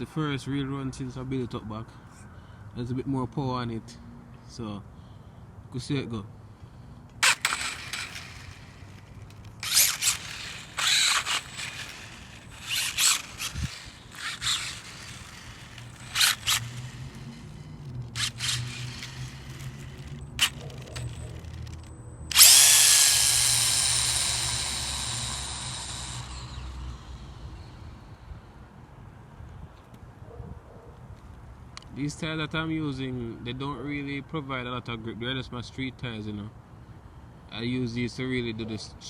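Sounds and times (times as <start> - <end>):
rc car motor revving: 7.2 - 28.0.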